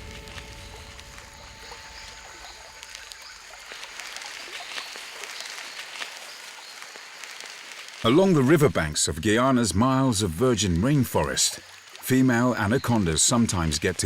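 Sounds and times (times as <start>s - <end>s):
faint chirps and ticks: 0.0s - 14.0s
steady high hiss: 0.0s - 14.0s.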